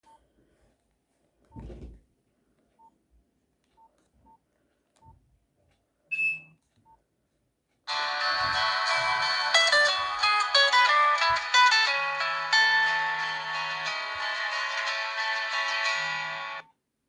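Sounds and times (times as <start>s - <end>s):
phone keypad beeps: 6.1s - 6.6s
polyphonic ringtone: 7.9s - 16.6s.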